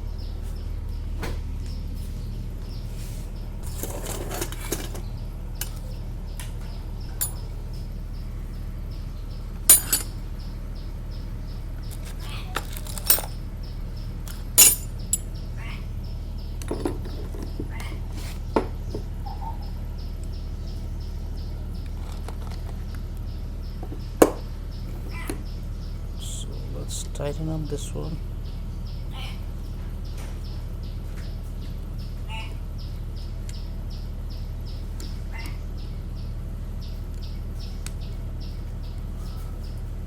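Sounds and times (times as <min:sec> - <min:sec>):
metal tools clinking: 0:07.1 - 0:07.5, 0:09.7 - 0:10.2, 0:12.0 - 0:13.4, 0:14.3 - 0:15.3.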